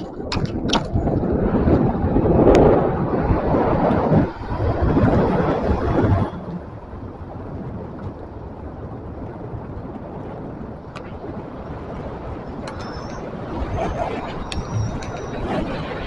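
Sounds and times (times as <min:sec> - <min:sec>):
wind and road noise rumble: 0:00.0 - 0:16.0
faint high chirps: 0:12.7 - 0:15.5.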